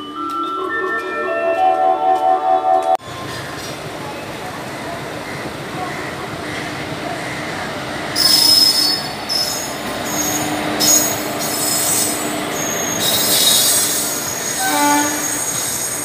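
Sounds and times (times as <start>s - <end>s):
train brakes squealing: 8.2s - 16.0s.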